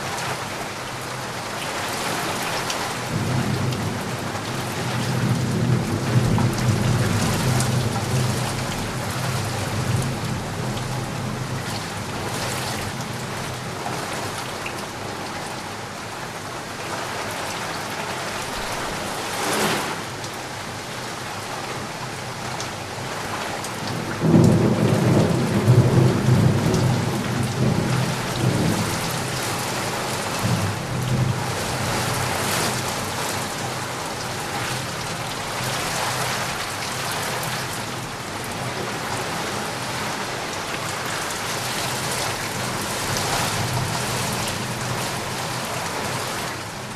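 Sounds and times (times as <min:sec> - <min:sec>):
steady rain falling: 0:00.0 - 0:46.9
low rumble of thunder: 0:03.0 - 0:13.6, 0:23.9 - 0:32.9.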